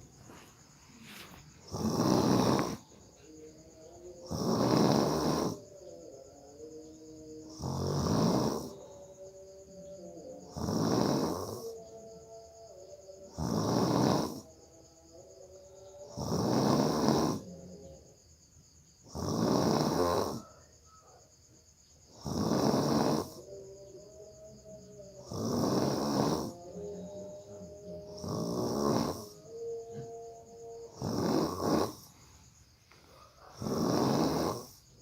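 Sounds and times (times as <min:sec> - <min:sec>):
faint steady tone: 0:00.0 - 0:35.0
person snoring loudly: 0:01.1 - 0:03.0, 0:03.7 - 0:09.5, 0:10.2 - 0:11.8, 0:13.1 - 0:14.6, 0:15.8 - 0:17.8, 0:19.0 - 0:20.7, 0:22.1 - 0:32.2, 0:33.4 - 0:35.0.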